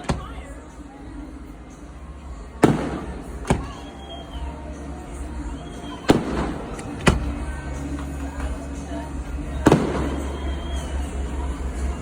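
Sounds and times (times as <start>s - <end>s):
fireworks exploding: 2.6s - 4.4s, 5.6s - 7.5s, 9.6s - 11.3s.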